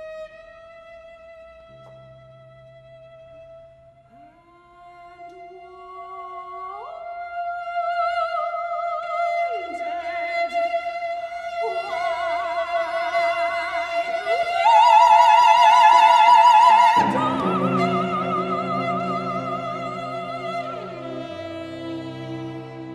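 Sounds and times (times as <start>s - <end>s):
soprano singing: 4.6s - 22.9s
cellos playing: 16.9s - 22.9s.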